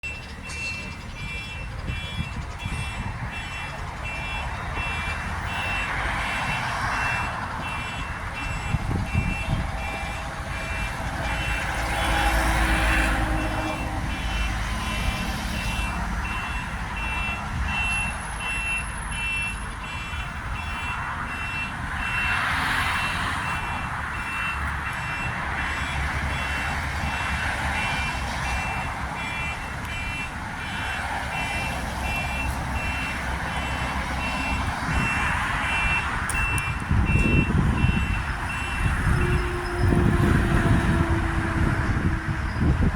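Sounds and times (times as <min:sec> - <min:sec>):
road traffic hum: 0:00.0 - 0:42.9
vehicles passing: 0:00.0 - 0:42.9
short high warning beeps: 0:31.4 - 0:40.0.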